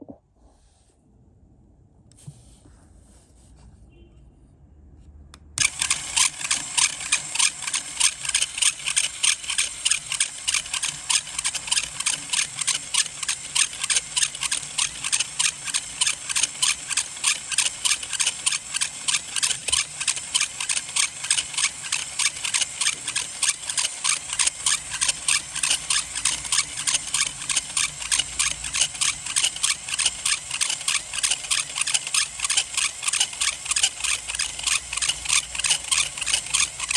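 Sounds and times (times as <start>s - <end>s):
toy gears squeaky grinding: 5.6s - 36.9s.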